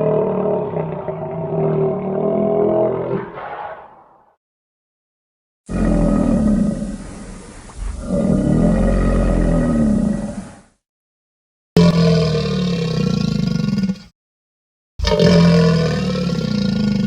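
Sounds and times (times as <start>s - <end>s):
crocodilian bellowing: 0.0s - 4.2s, 15.0s - 17.0s.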